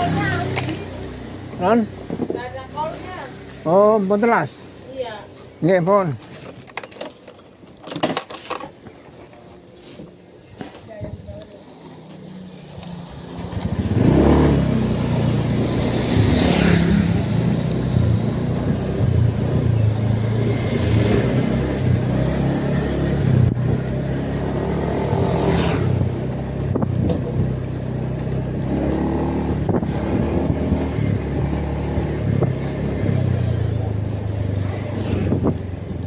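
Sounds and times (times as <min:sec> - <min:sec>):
motor vehicle engine accelerating: 0:12.0 - 0:36.0.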